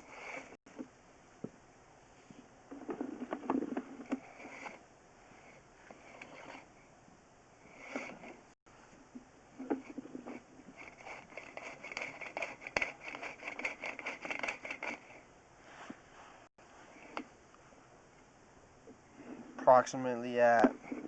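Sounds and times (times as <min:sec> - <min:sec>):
cable scraping and rattling in drain: 0:02.7 - 0:04.8, 0:05.9 - 0:06.6, 0:09.6 - 0:15.2.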